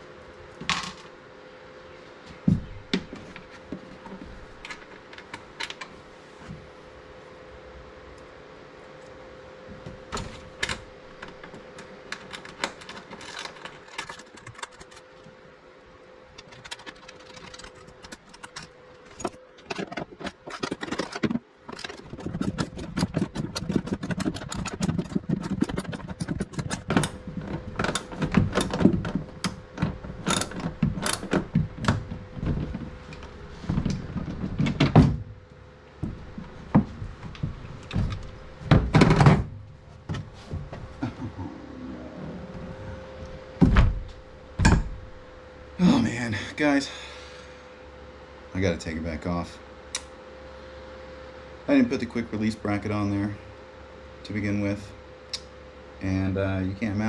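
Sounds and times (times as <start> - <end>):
faint steady hum: 0.0 - 57.0
bolts and hardware rattling: 10.0 - 15.1, 16.4 - 35.3
heavy thuds: 42.4 - 45.3.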